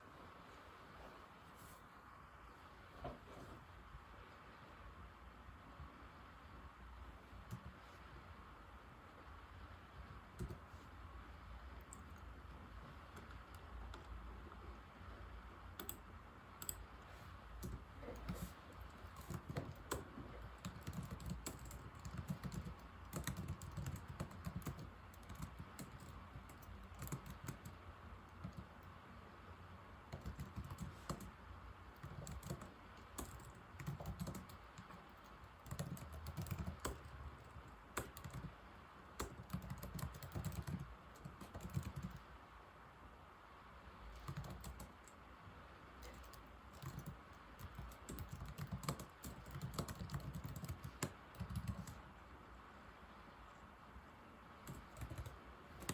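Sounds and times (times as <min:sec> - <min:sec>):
laptop keyboard typing: 0:07.4 - 0:08.1, 0:09.9 - 0:10.8, 0:11.7 - 0:14.6, 0:15.7 - 0:29.0, 0:30.1 - 0:42.3, 0:44.1 - 0:45.2, 0:46.0 - 0:52.1, 0:54.6 - 0:55.9.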